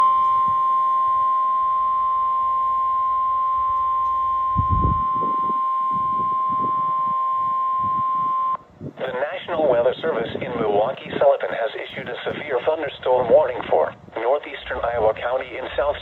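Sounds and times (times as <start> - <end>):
steady alarm tone: 0.0 - 8.6.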